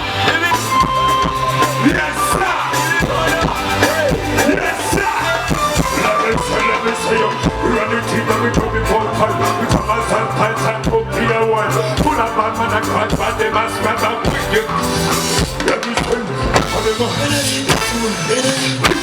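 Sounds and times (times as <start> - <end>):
bass line: 0.0 - 19.0
drums: 0.0 - 19.0
person singing: 0.0 - 19.0.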